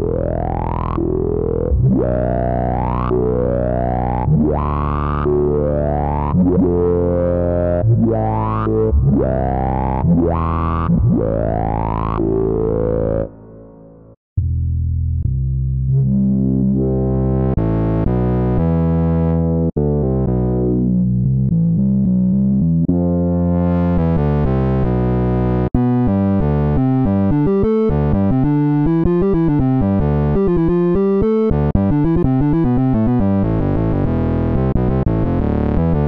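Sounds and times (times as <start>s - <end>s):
synthesizer arpeggio: 0.0s - 14.1s, 22.9s - 36.0s
synthesizer chords with filter sweep: 0.0s - 14.2s, 16.1s - 36.0s.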